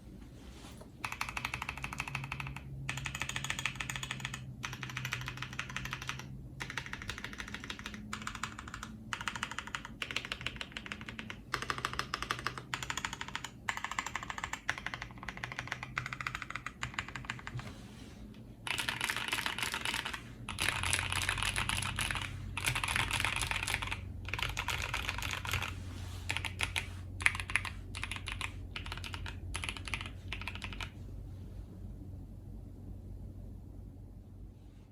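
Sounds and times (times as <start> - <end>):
typing on mechanical keyboard: 1.0 - 17.6, 18.6 - 25.7, 26.3 - 31.0.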